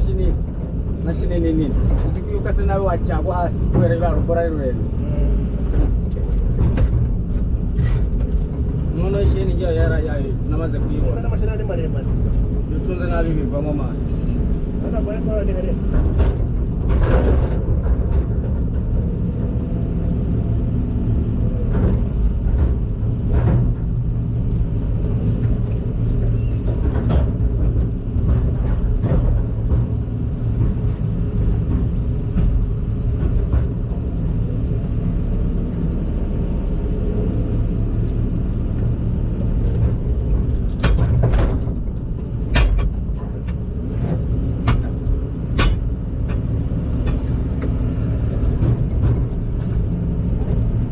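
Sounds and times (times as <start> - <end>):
heavy machine engine humming: 0.0 - 50.9
knocks and clicks: 38.8 - 50.6.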